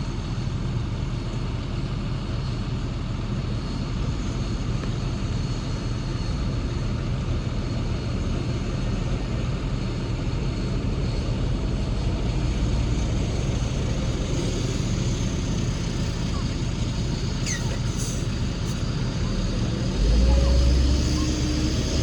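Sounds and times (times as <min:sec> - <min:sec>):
diesel engine rumble: 0:10.4 - 0:22.0.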